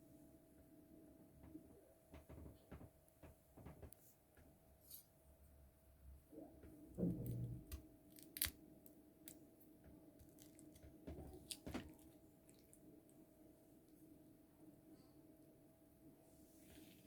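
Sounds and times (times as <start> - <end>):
faint clicks and knocks: 1.4 - 4.6.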